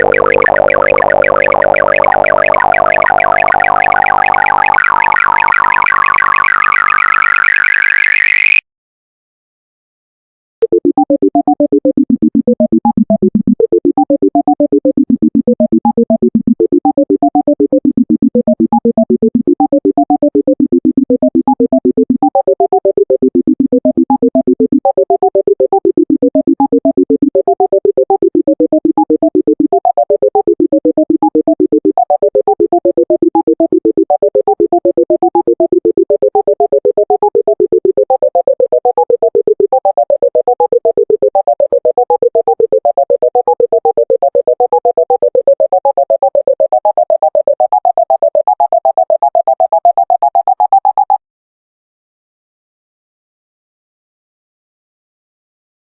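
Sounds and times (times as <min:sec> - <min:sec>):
held low synth tone: 0:00.0 - 0:08.6
rapid synthesized beeps: 0:00.0 - 0:08.6.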